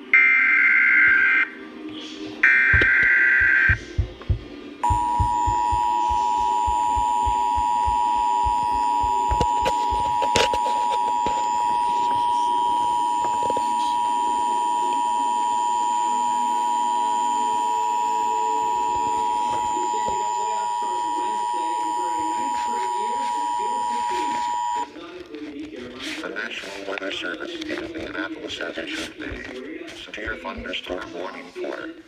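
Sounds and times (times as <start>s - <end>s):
steady alarm tone: 2.4s - 25.0s.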